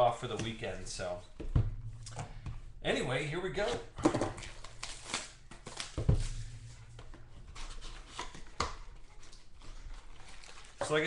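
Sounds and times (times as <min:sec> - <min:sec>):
loud knock: 0:01.4 - 0:03.0
card packs crinkling and clicking: 0:04.1 - 0:06.0, 0:07.8 - 0:11.0.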